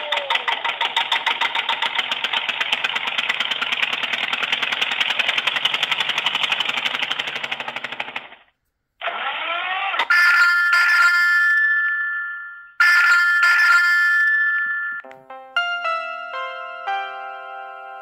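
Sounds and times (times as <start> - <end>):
upward-sweeping ringtone tones: 10.1 - 18.0.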